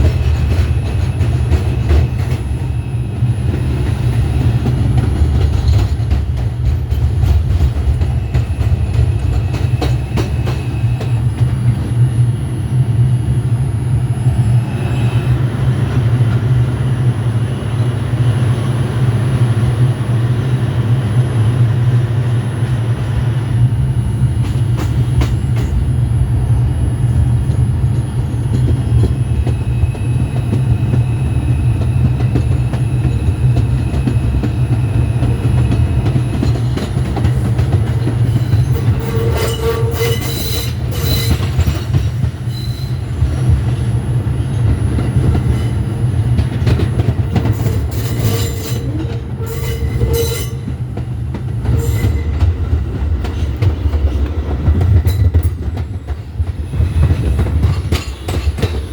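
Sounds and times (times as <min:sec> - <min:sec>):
subway train rumbling: 0:00.0 - 0:58.9
train wheels squealing: 0:00.0 - 0:58.9
wheels clacking over rail joints: 0:03.4 - 0:11.9, 0:31.8 - 0:43.9, 0:44.5 - 0:58.9.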